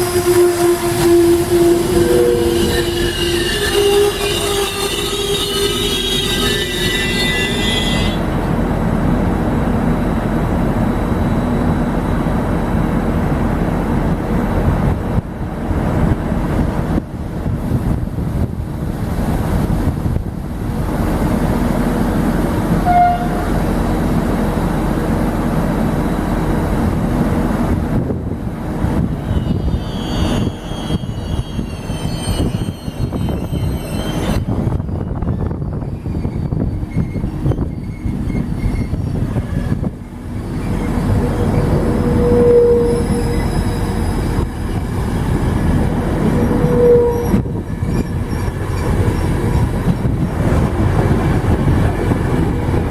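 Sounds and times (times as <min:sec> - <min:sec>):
high-pitched wheel squeal: 0:00.0 - 0:08.2, 0:29.2 - 0:49.8
train wheels rumbling on rails: 0:00.0 - 0:52.9.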